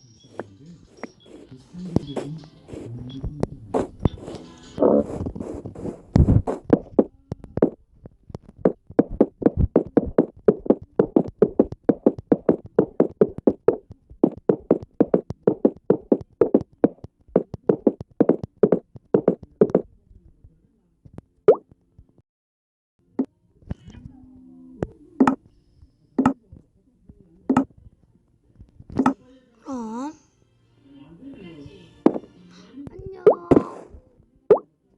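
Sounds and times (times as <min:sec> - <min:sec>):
rapid short knocks: 0:08.4 - 0:19.8.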